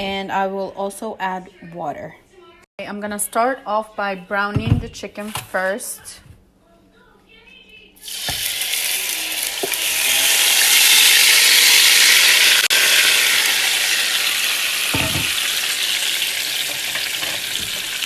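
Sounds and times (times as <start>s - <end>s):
chicken sizzling in hot oil: 8.0s - 18.0s.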